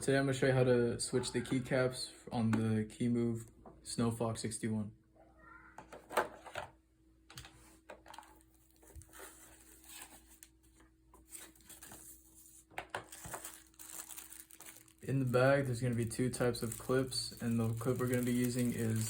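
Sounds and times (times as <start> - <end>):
plastic bag crinkling: 13.0 - 19.0.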